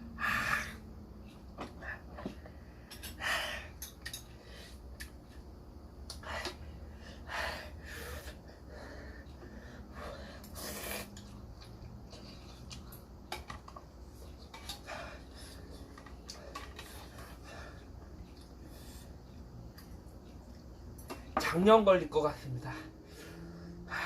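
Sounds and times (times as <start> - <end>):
electric fan humming: 0.0 - 24.0
man sniffing and snorting: 10.4 - 11.2.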